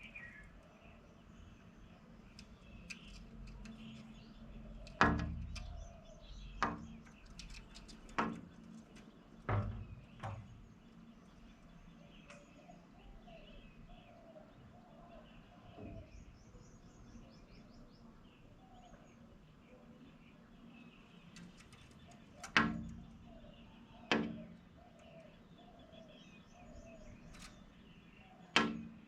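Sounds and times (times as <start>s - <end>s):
faint birds chirping: 0.0s - 29.0s
sharp knocks: 9.5s - 10.6s.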